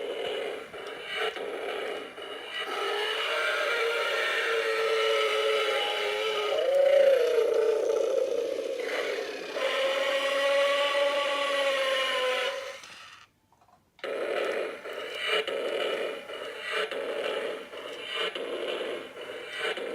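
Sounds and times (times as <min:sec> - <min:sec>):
toy motor and gears whirring: 0:00.0 - 0:13.3.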